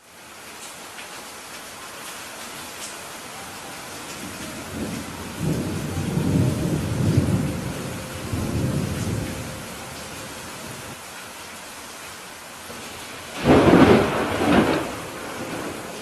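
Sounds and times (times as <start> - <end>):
heavy rain: 0.0 - 16.0
thunder rumbling: 4.1 - 11.0, 12.7 - 16.0.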